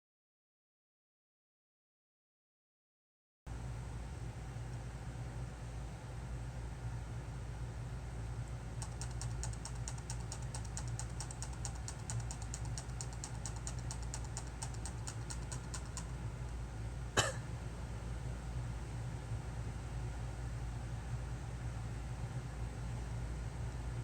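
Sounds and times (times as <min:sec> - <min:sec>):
low steady hum: 0:03.5 - 0:24.0
light clicks: 0:08.8 - 0:16.1
sharp click: 0:08.8 - 0:16.1.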